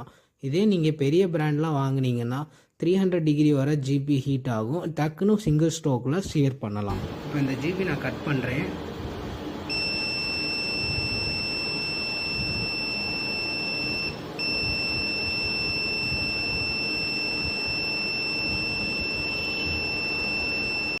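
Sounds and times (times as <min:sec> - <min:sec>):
high-pitched beep: 0:09.7 - 0:21.0.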